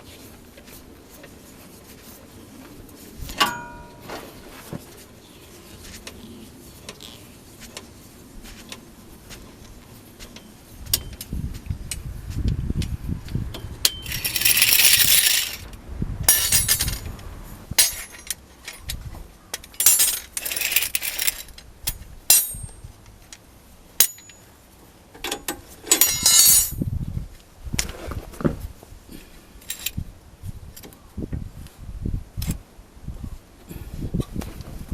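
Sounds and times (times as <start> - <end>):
metal tools clinking: 3.4 - 4.1, 13.8 - 15.7, 16.3 - 17.1, 17.8 - 18.9, 19.6 - 22.8, 24.0 - 24.5, 25.3 - 26.8, 29.6 - 30.0.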